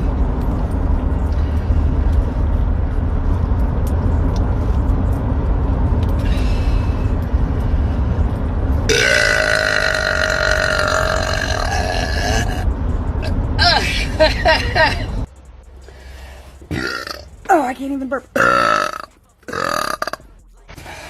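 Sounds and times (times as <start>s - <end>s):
steady low rumble: 0.0s - 21.0s
long pitched burp: 8.9s - 12.6s, 16.7s - 17.2s.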